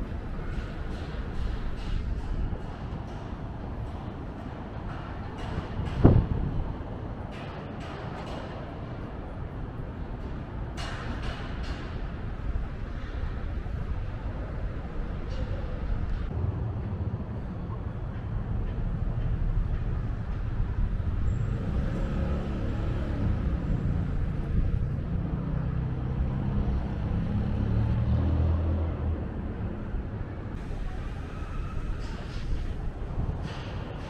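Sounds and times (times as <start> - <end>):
city street traffic: 0.0 - 34.0
heavy vehicle engine rumbling: 9.2 - 34.0.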